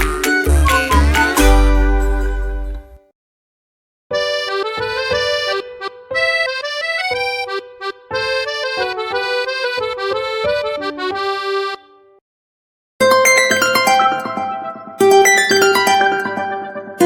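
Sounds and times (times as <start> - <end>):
phone tone melody: 13.0 - 17.0.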